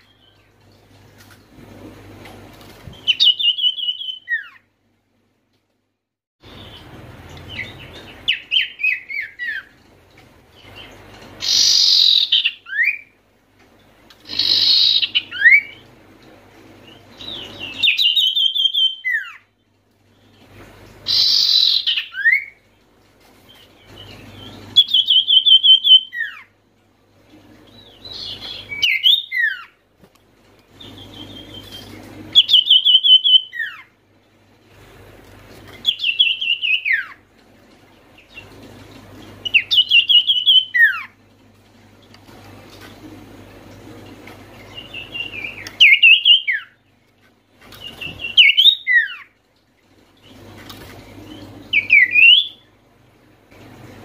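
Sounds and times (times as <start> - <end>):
bird singing trills and whistles: 3.0 - 4.6, 7.5 - 9.7, 10.6 - 13.2, 14.3 - 15.8, 16.8 - 19.5, 21.1 - 22.6, 23.6 - 26.5, 27.7 - 29.8, 30.8 - 33.9, 35.8 - 37.2, 39.4 - 41.2, 44.6 - 46.8, 47.8 - 49.3, 51.2 - 52.7.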